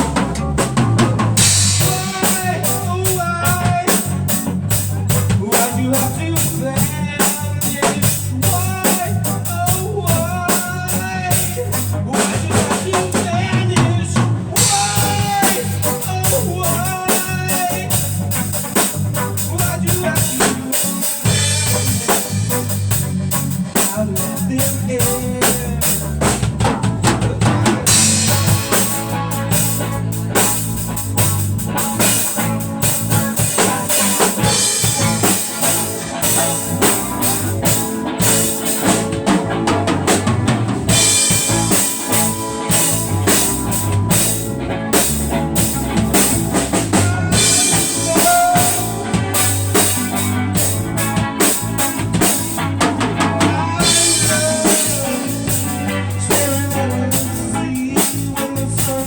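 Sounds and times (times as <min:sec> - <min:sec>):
band music: 0:00.0 - 0:59.0
drum kit beat: 0:00.0 - 0:59.0.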